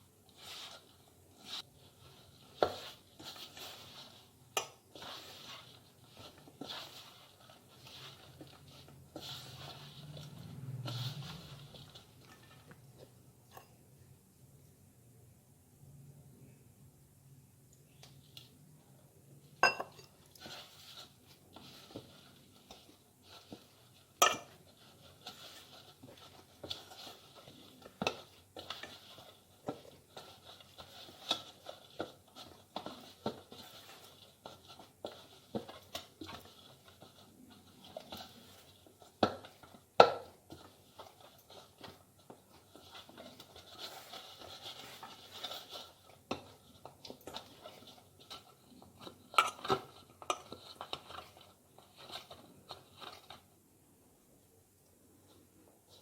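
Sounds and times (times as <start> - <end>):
hands kneading dough: 0.0 - 15.0, 17.6 - 56.0
knocks and clinks against bowl: 19.6 - 20.1.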